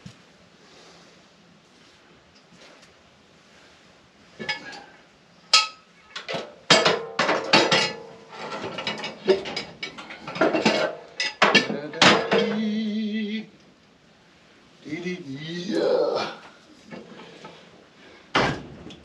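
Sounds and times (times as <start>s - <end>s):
metal clanks and ratcheting: 5.5s - 12.8s.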